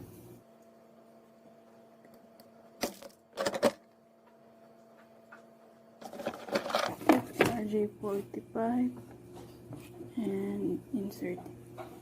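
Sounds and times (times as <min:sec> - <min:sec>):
rustling handling noise: 0:06.0 - 0:07.6.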